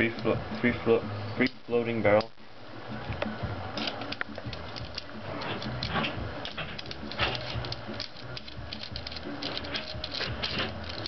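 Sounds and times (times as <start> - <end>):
steady low hum: 0.0 - 11.0
rifle parts clicking and tapping: 3.8 - 11.0.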